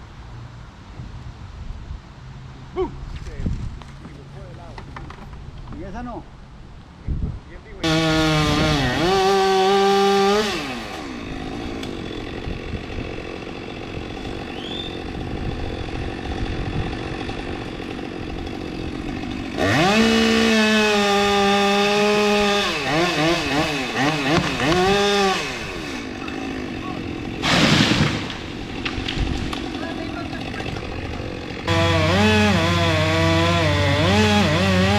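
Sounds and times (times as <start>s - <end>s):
chainsaw revving: 7.8s - 34.9s.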